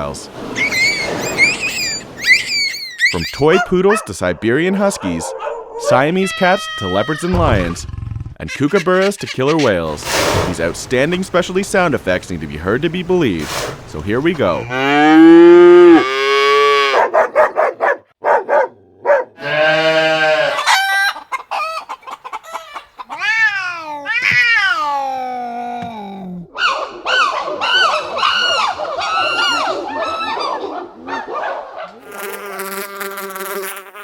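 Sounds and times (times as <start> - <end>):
animal and bird calls: 0.5 - 4.1, 20.5 - 24.8, 26.6 - 31.5.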